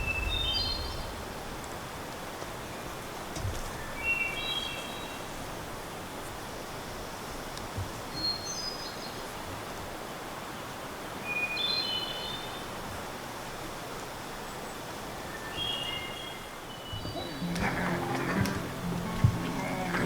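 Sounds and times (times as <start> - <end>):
outdoor background hiss: 17.0 - 20.0.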